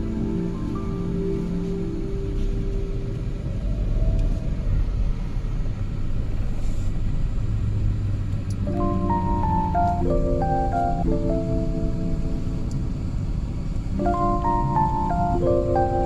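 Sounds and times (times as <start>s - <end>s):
faint whine: 0.0s - 6.6s
low steady rumble: 0.0s - 16.0s.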